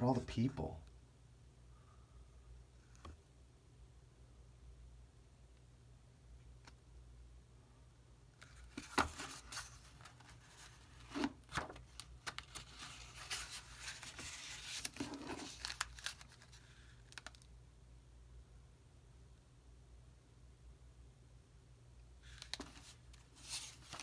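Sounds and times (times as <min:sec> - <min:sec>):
paper pages rustling: 0:08.5 - 0:17.4, 0:22.2 - 0:24.0.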